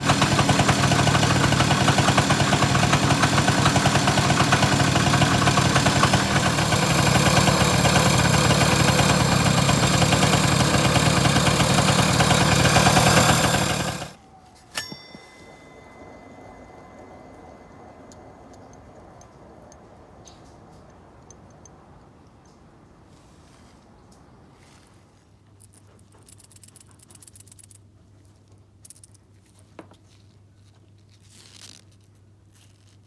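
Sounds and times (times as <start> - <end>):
scooter engine idling: 0.0 - 21.2
sharp metallic click: 14.7 - 15.6.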